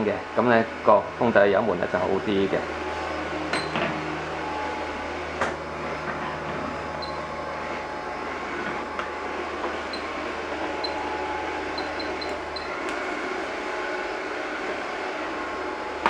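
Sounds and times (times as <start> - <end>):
toy helicopter rotor whir: 9.8 - 14.4.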